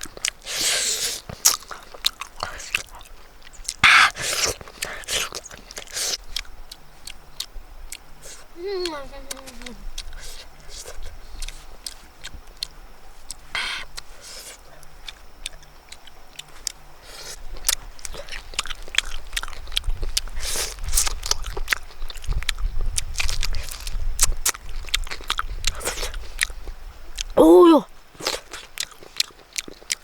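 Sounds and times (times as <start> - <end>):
crunchy bites and chewing: 0.0 - 8.5, 9.3 - 30.0.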